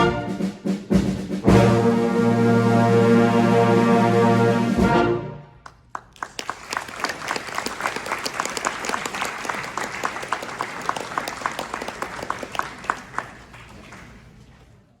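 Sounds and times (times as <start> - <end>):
audience applauding: 5.6 - 14.8.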